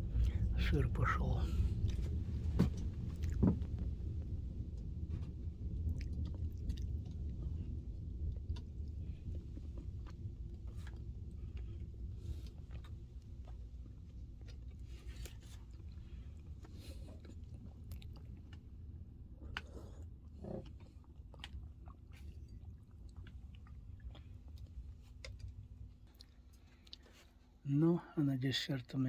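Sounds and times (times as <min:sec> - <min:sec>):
low rumble: 0:00.0 - 0:26.0
person chewing: 0:01.8 - 0:03.8, 0:05.8 - 0:07.5, 0:09.8 - 0:18.8, 0:19.4 - 0:27.4.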